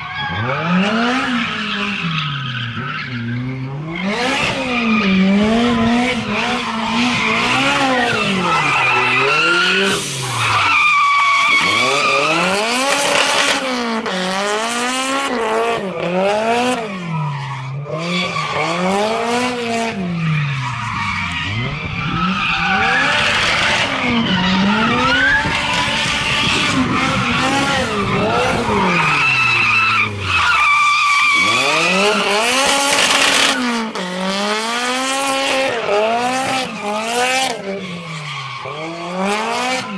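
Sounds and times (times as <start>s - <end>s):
car engine revving: 0.0s - 39.9s
tyres squealing: 27.0s - 33.7s.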